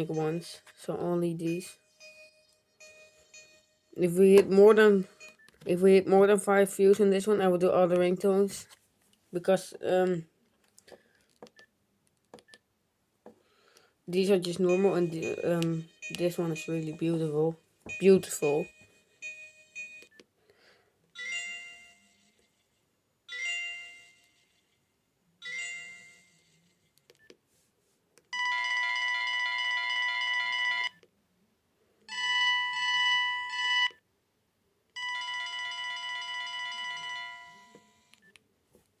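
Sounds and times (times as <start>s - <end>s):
long buzzy ringtone tones: 0.0s - 5.6s, 14.5s - 20.2s, 21.2s - 22.4s, 23.3s - 24.7s, 25.4s - 26.8s, 28.4s - 31.0s, 32.1s - 34.0s, 35.0s - 38.2s.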